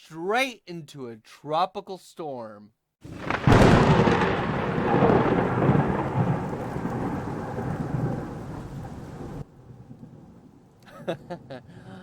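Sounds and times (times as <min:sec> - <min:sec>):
rolling thunder: 0:03.0 - 0:11.5
rain: 0:03.0 - 0:12.0.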